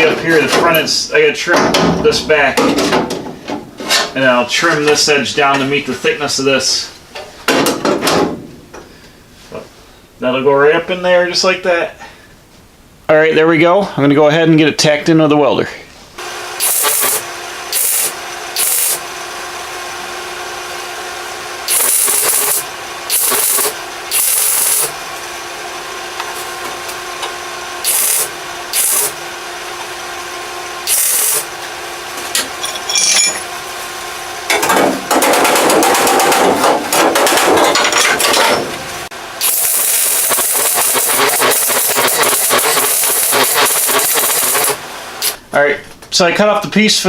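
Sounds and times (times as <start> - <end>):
welding crackle: 16.6 - 19.0, 21.7 - 25.0, 27.8 - 29.2, 30.9 - 31.5, 39.4 - 45.4.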